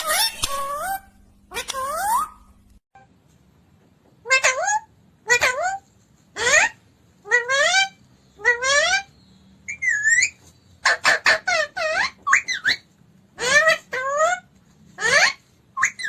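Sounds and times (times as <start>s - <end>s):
parrot calling: 0.0s - 2.6s, 4.2s - 9.1s, 9.7s - 16.0s.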